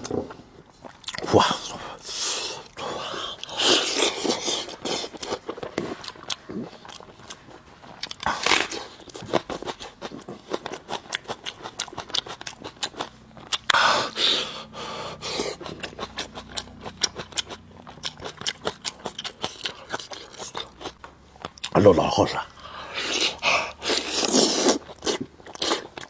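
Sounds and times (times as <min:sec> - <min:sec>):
person chewing meat: 0:00.0 - 0:21.8, 0:22.5 - 0:26.0
noisy bites or slurps: 0:22.9 - 0:26.0.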